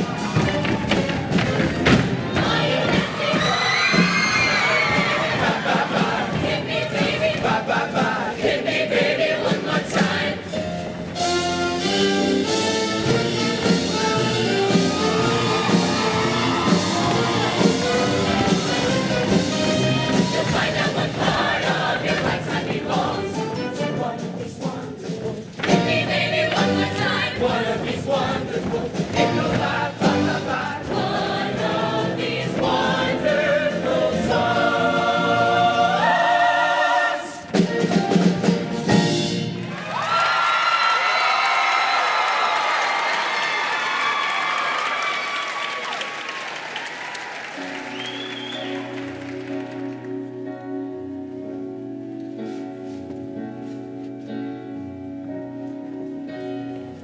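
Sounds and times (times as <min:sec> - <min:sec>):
choir singing: 0:01.9 - 0:10.6, 0:12.8 - 0:37.5
steady drum beat: 0:12.8 - 0:34.9.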